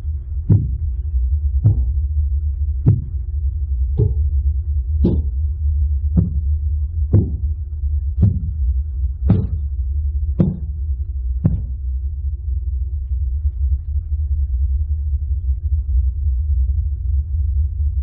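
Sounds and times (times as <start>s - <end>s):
low steady drone: 0.0s - 18.0s
dull thumps: 0.4s - 1.0s, 1.6s - 2.1s, 2.8s - 3.3s, 4.0s - 4.3s, 5.0s - 5.4s, 6.2s - 7.6s, 8.2s - 8.7s, 9.3s - 9.7s, 10.4s - 11.8s.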